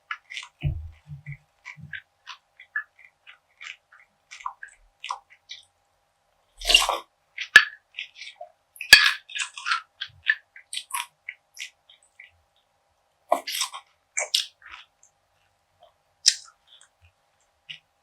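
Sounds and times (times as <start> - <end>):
crunchy chewing: 6.6 - 12.3, 13.3 - 15.5.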